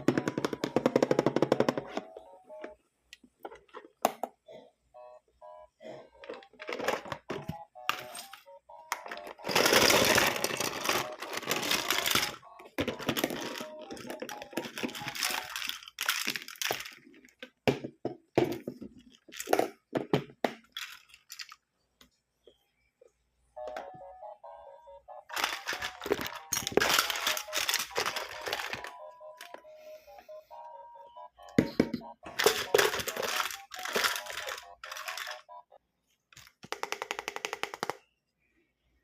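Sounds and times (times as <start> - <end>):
faint melody: 0.0 - 3.1, 4.4 - 15.9, 22.4 - 36.0
plastic packaging crinkling: 8.0 - 17.2, 25.3 - 29.6, 32.3 - 35.4.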